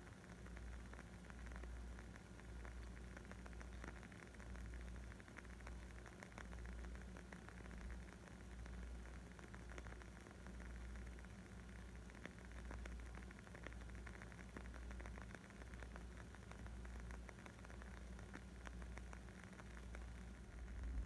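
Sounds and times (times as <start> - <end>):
wood fire crackling: 0.1 - 21.0
low rumble: 20.5 - 21.0.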